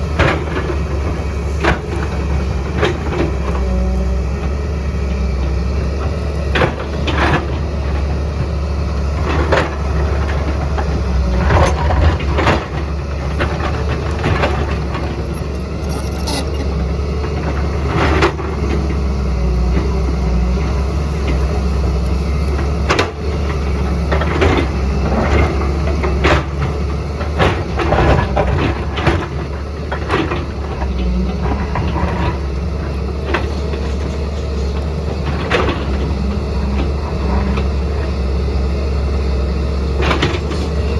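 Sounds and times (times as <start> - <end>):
excavator diesel engine droning: 0.0 - 40.9
excavator knocks and clatters: 0.0 - 40.9.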